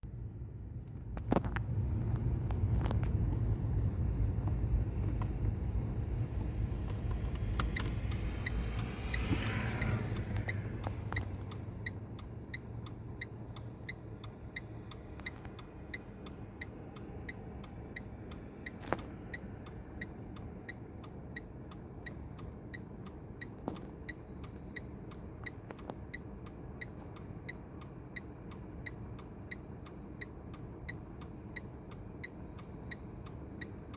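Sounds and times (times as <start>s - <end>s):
vehicle engine rumbling: 0.0s - 33.9s
steady light ticking: 2.5s - 33.9s
clicks: 6.5s - 13.0s.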